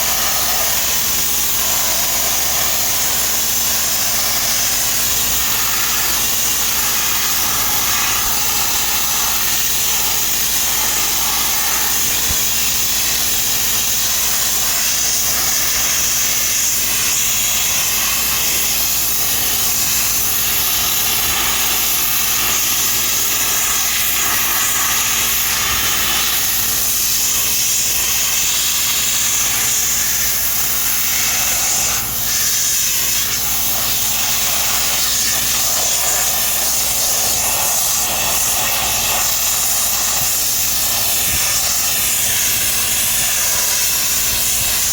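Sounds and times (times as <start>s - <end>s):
sandblaster jet hiss: 0.0s - 44.9s.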